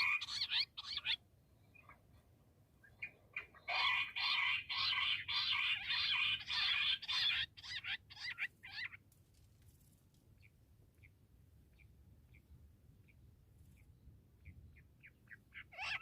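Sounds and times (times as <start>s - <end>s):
quail calling: 0.0s - 1.2s, 2.8s - 9.0s, 14.4s - 16.0s.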